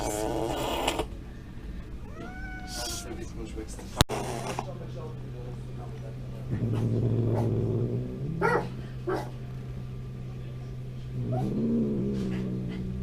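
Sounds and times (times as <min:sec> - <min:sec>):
cat growling yowls: 0:02.0 - 0:03.1.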